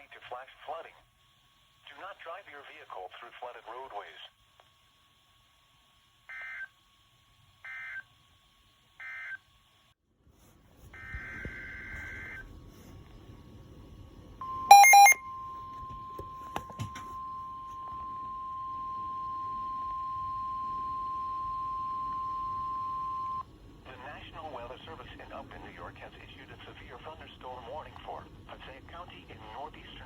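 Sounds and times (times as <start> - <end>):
loud electronic beep: 14.7 - 15.2
steady single-pitch alert tone: 14.7 - 15.2.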